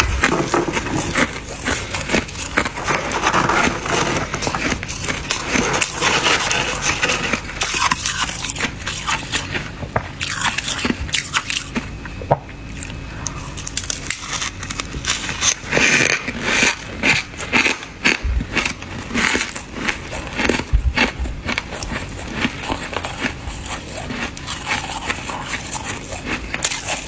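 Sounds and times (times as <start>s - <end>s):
frost being scraped off crunching: 0.0s - 11.6s, 13.6s - 17.8s.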